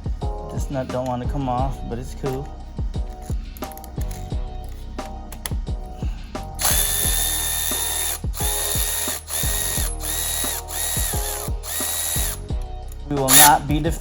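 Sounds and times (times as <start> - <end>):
music with deep bass: 0.0 - 14.0
impact wrench hammering: 6.6 - 12.4, 13.3 - 13.6.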